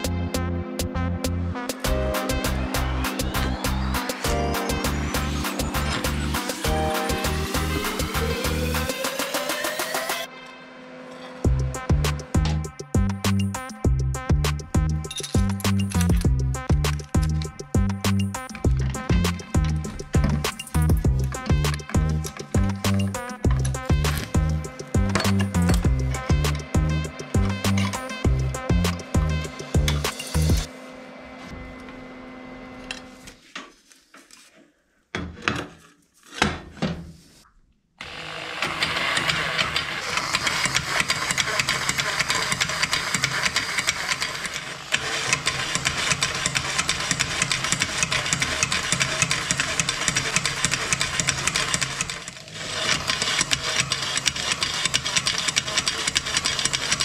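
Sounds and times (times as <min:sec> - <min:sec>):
knocks and clicks: 0:11.5 - 0:30.7
shaking mechanism rattling: 0:15.0 - 0:16.3, 0:18.4 - 0:26.8.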